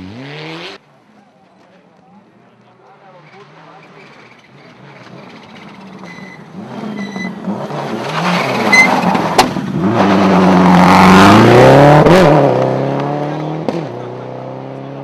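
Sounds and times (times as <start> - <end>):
rally car engine passing by: 3.3 - 15.0.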